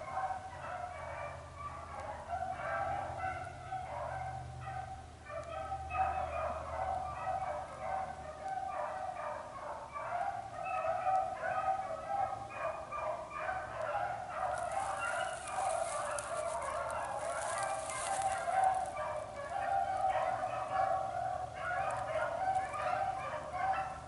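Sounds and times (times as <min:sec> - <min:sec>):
beagles baying: 0:00.0 - 0:24.0
crackling rustle: 0:13.2 - 0:24.0.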